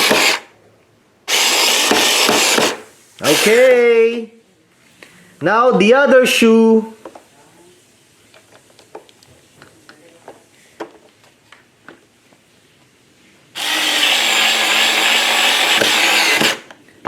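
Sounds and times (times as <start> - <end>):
power drill driving a screw: 0.0 - 0.4, 1.3 - 3.6, 13.6 - 16.7.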